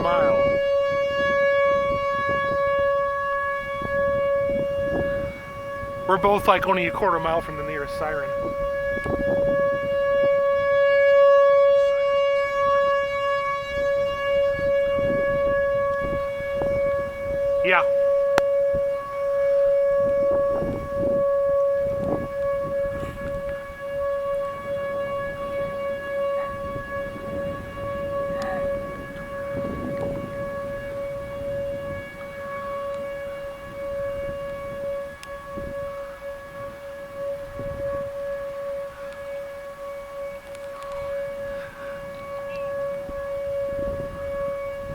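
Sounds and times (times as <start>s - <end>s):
warning siren: 0.0s - 44.9s.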